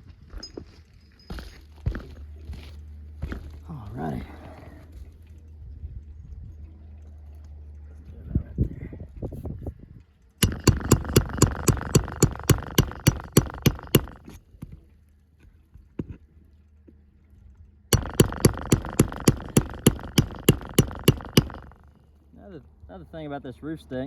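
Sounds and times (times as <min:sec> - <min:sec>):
hammer striking metal: 0:10.4 - 0:14.4, 0:18.0 - 0:21.8
metal tool ringing: 0:10.4 - 0:14.4.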